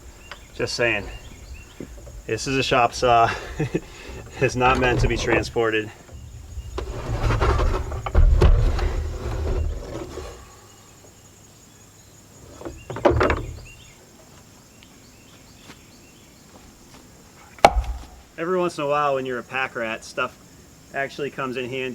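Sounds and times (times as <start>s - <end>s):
faint insect chirps: 0.0s - 21.9s
heavy tools knocking and scraping: 0.3s - 10.3s
heavy tool thud: 17.6s - 18.3s.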